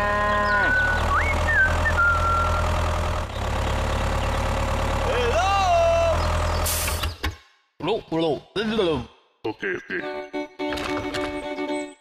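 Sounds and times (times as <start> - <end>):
low engine hum: 0.0 - 7.0.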